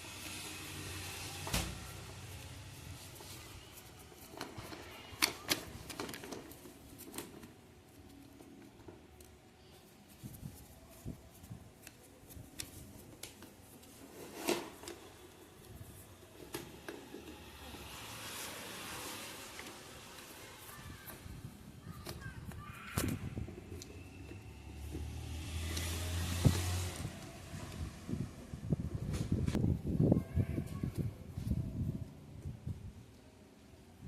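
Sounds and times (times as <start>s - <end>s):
plastic fan parts clicking: 4.2s - 9.4s.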